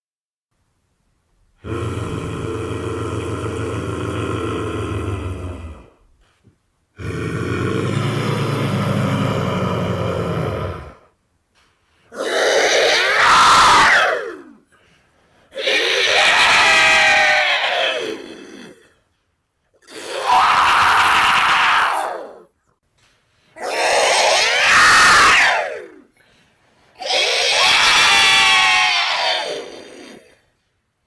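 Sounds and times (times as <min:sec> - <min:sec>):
cries falling in pitch: 0:12.2 - 0:14.6, 0:15.6 - 0:18.8, 0:19.9 - 0:22.4, 0:23.6 - 0:26.0, 0:27.0 - 0:30.3.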